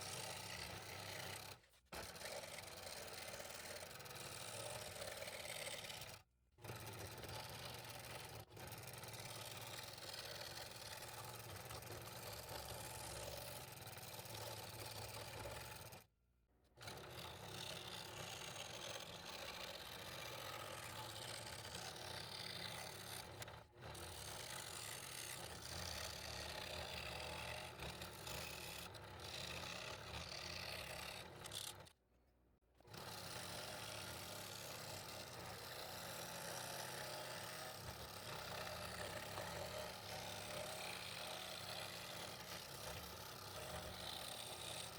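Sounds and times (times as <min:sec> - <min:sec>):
scroll saw cutting wood: 0:16.8 - 0:32.0, 0:32.9 - 0:44.9.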